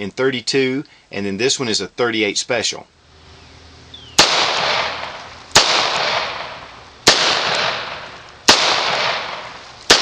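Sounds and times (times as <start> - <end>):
revolver shots with echo: 4.1 - 10.0.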